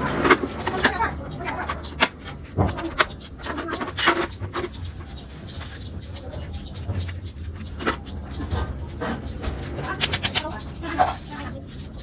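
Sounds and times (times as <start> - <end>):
small plastic parts clicking: 0.0 - 4.8, 9.9 - 10.5.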